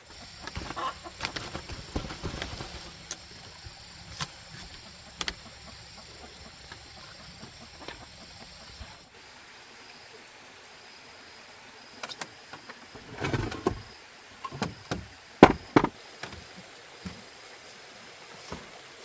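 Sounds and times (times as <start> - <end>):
steady background hiss: 0.0 - 19.0
knocks and clatters: 14.6 - 16.0.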